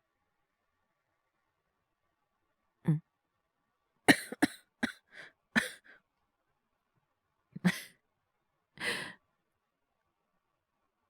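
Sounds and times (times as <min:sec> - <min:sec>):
person coughing: 0:04.1 - 0:05.0, 0:05.6 - 0:05.8.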